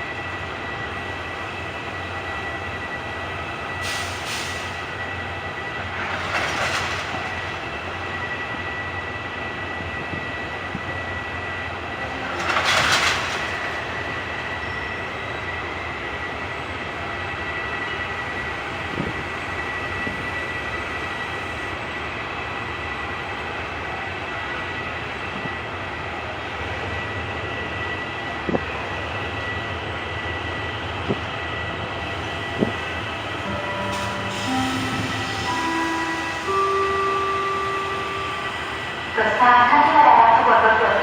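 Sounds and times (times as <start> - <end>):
diesel train running: 0.0 - 41.0
high whine: 32.6 - 39.8.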